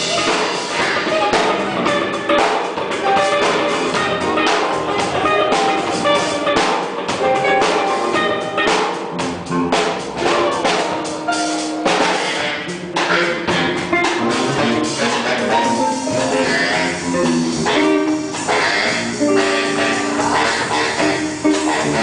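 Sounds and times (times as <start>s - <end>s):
drum kit beat: 0.0s - 22.0s
sustained instrument notes: 14.1s - 22.0s.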